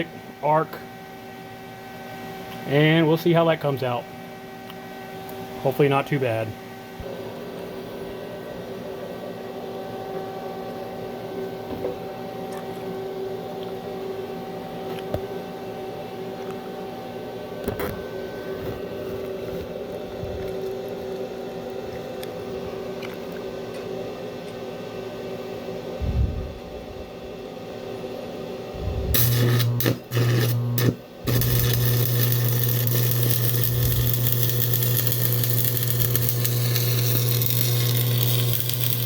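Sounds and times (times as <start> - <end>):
arc welding buzz and hiss: 28.9 - 39.0
welding pops: 29.2 - 39.0.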